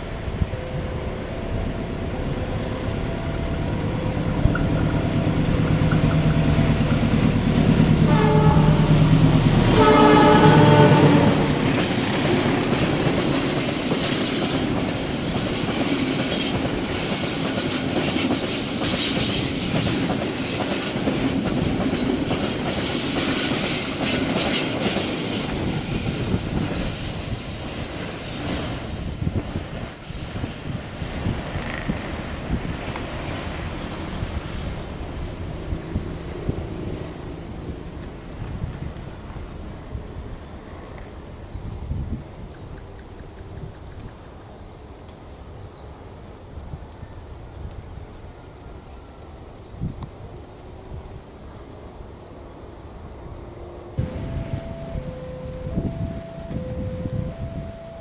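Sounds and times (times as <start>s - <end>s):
wheels clattering on rails: 0.0s - 45.2s
train rumble: 0.0s - 58.0s
train horn blasts: 3.1s - 12.7s, 54.0s - 58.0s.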